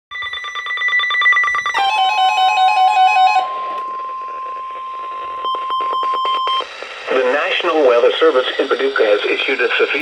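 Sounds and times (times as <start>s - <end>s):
warbling beeps: 0.1s - 6.7s
rapid electronic beeping: 0.1s - 10.0s
steady warning alarm tone: 0.1s - 10.0s.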